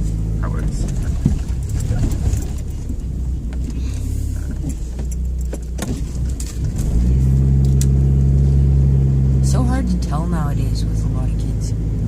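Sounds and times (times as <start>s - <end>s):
car engine and road noise: 0.0s - 12.0s
light clicks and rattles: 4.4s - 7.0s.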